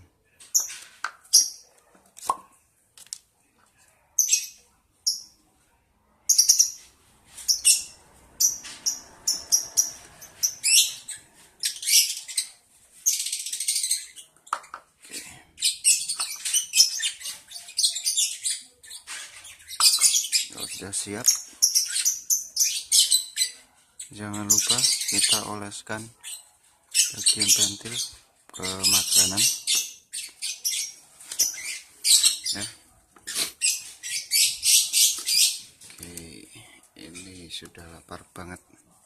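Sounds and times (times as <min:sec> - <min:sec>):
bird chick chirping: 0:07.5 - 0:14.2.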